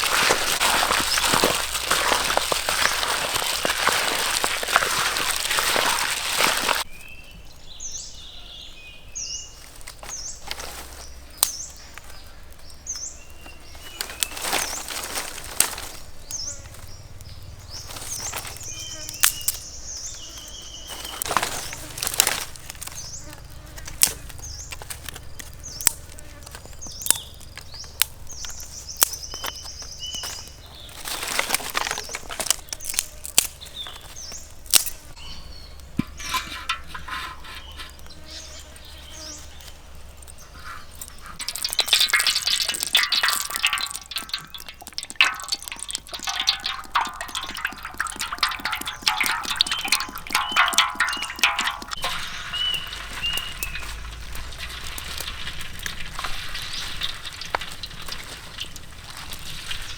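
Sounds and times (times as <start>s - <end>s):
food sizzling in hot oil: 0.0s - 6.9s, 41.2s - 59.9s
birds chirping: 0.0s - 59.9s.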